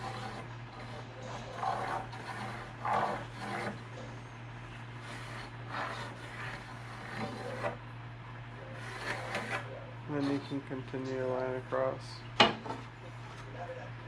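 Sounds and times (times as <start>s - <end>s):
pencil and square scraping wood: 0.0s - 3.9s, 5.0s - 7.8s, 8.7s - 10.6s
steady low hum: 0.0s - 14.0s.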